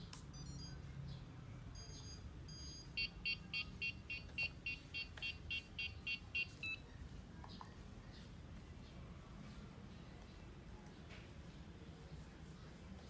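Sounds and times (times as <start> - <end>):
rapid electronic beeps: 0.3 - 0.8, 1.8 - 6.8
high electronic chirps: 1.8 - 6.8.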